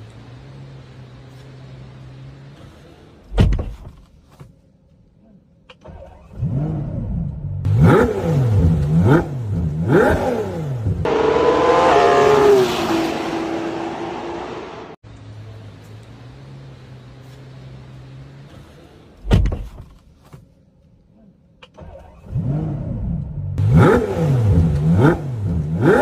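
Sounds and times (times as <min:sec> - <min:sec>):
loud thump: 0:03.3 - 0:04.0
engine revving: 0:06.1 - 0:15.0, 0:21.8 - 0:26.0.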